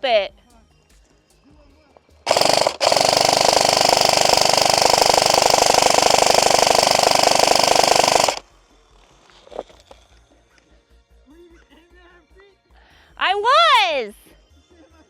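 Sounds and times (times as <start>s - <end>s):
airsoft gun full-auto burst: 2.3s - 8.4s.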